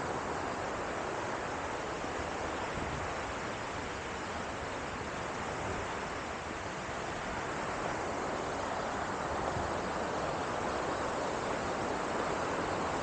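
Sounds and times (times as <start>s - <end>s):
stream and waterfall rushing: 0.0s - 13.0s.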